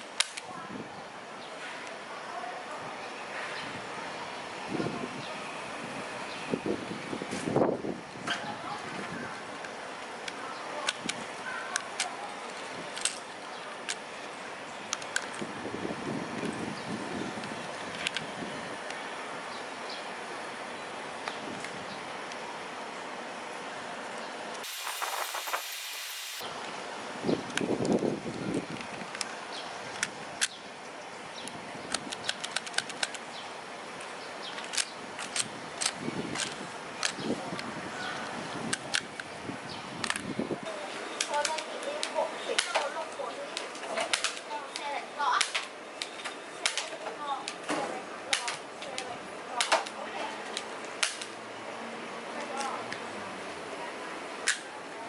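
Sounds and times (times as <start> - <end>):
steady hiss: 24.6 - 26.4
toy gun plastic clicks: 31.9 - 33.2.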